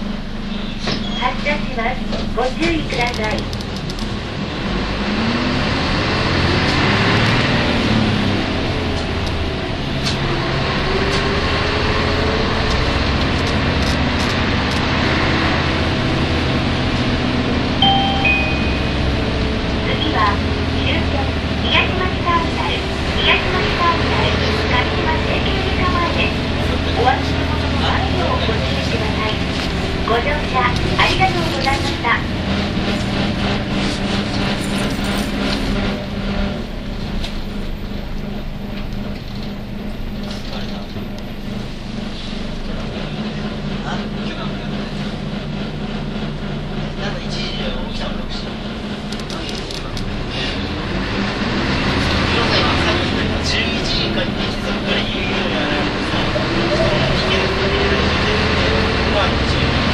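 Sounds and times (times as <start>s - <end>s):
bus diesel engine running: 0.0s - 59.9s
road noise: 0.0s - 59.9s
steady droning tone: 35.6s - 49.1s.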